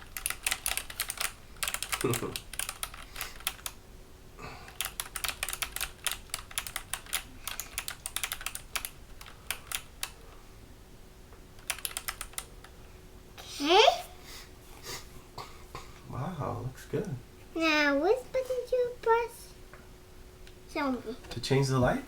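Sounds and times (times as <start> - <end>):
mechanical keyboard typing: 0.0 - 3.8, 4.7 - 10.2, 11.6 - 12.5.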